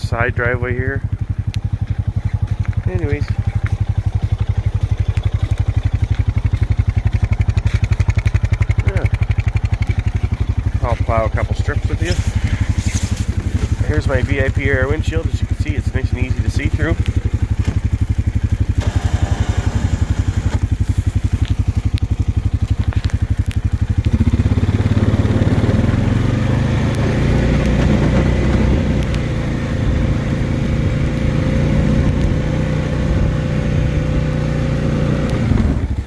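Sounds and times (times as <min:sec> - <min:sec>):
atv engine: 0:00.0 - 0:36.0
plow pushing snow: 0:00.0 - 0:36.0.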